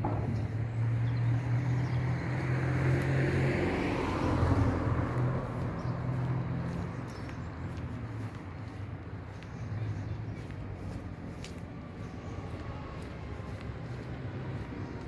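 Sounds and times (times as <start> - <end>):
vehicle engine humming: 0.0 - 15.0.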